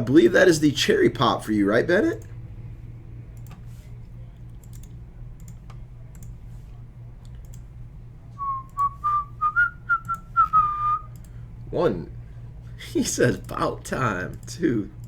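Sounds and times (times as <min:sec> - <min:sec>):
steady low hum: 0:00.0 - 0:15.0
faint clicks: 0:03.3 - 0:03.7, 0:04.4 - 0:06.5, 0:07.2 - 0:07.7, 0:09.9 - 0:11.4
person whistling a tune: 0:08.4 - 0:11.1.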